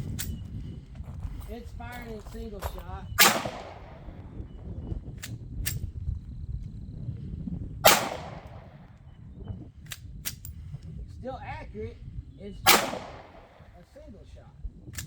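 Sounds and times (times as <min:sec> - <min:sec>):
pistol shot echoing: 0:03.2 - 0:04.2, 0:07.9 - 0:08.9, 0:12.7 - 0:13.8.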